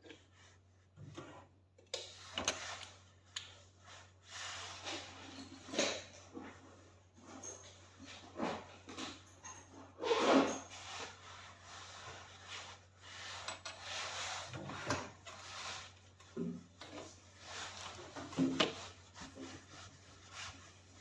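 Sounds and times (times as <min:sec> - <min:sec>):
rubbing and scraping: 0:09.7 - 0:21.0.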